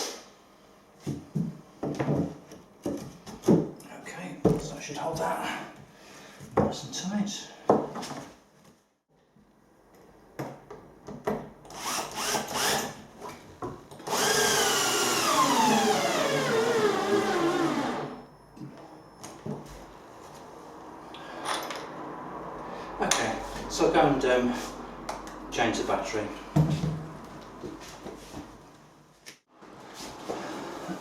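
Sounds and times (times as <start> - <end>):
cordless drill motor running: 11.7 - 12.9, 14.0 - 18.2.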